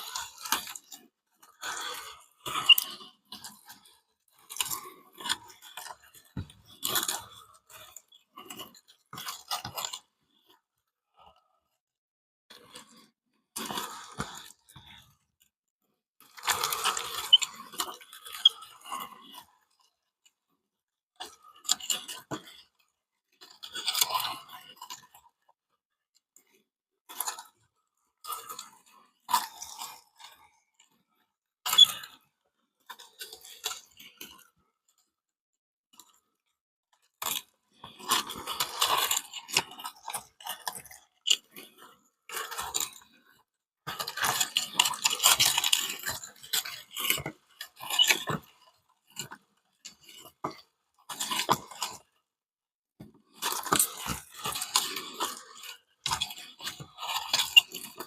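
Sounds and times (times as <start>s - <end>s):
clay squishing through grinder: 0.0s - 11.8s, 12.6s - 20.6s, 36.0s - 58.0s.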